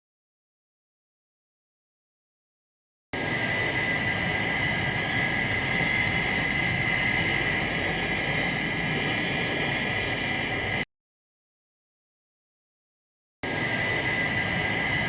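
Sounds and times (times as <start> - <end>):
sci-fi mechanical drone: 3.2 - 10.8, 13.4 - 15.0
high whine: 3.2 - 10.9, 13.4 - 15.0.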